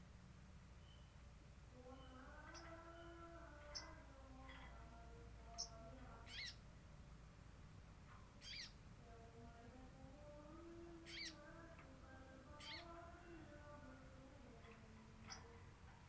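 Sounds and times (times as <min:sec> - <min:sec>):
faint background noise: 0:00.0 - 0:16.0
high bird chirps: 0:05.5 - 0:06.6, 0:08.4 - 0:08.8, 0:11.1 - 0:11.5, 0:12.6 - 0:13.0.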